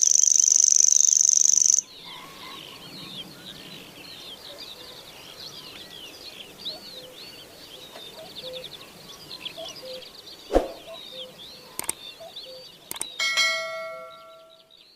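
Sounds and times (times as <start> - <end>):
reed warbler chattering song: 0.0 - 14.9
faint clicks: 11.8 - 12.0, 12.9 - 13.2.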